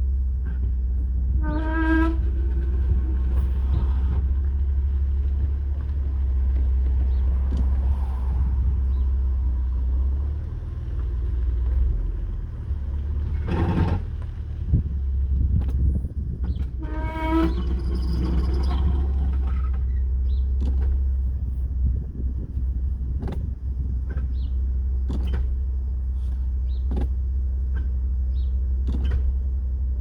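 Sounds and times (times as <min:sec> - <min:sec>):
car driving low rumble: 0:00.0 - 0:30.0.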